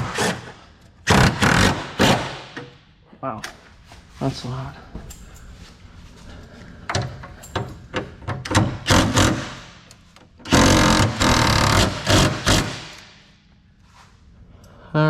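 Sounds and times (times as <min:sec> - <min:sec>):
power tool bursts: 0:08.8 - 0:09.8, 0:10.5 - 0:13.0.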